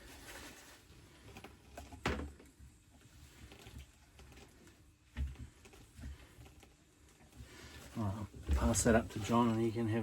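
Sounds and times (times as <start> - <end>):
faint clicks and rustles: 0.0 - 10.0.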